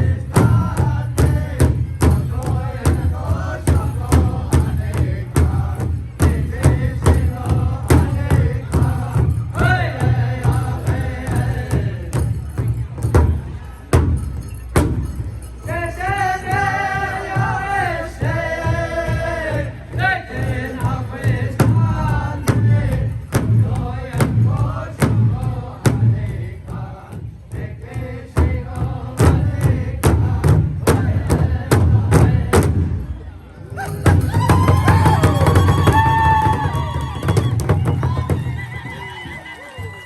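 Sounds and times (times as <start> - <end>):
singers chanting together: 0.0 - 12.3, 15.7 - 33.1
bass drum beats: 0.0 - 33.1, 33.8 - 39.4.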